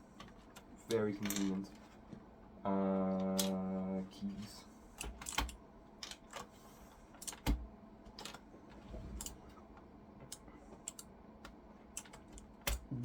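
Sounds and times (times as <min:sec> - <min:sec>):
keycaps clicking and snapping: 0:05.0 - 0:06.5, 0:07.2 - 0:08.5, 0:09.2 - 0:13.0.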